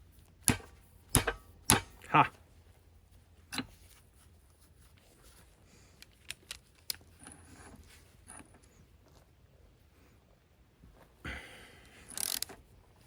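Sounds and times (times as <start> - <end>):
light scraping of metal parts: 3.2 - 9.3.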